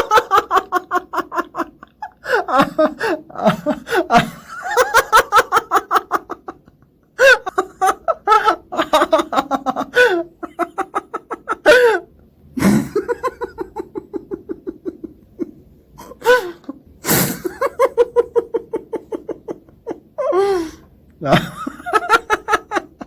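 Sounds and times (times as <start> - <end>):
man laughing: 0.0 - 12.0, 12.6 - 20.1, 21.2 - 23.0.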